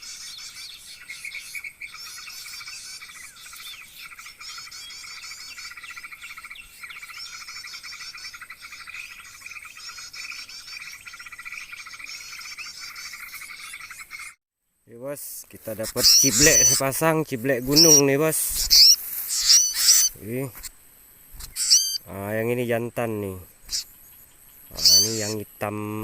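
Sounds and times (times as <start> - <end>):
small birds chirping: 0.0 - 26.0.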